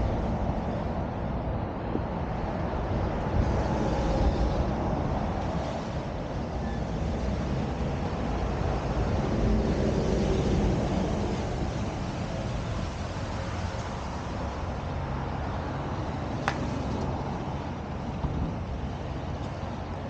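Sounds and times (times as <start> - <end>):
wind rush: 0.0 - 20.0.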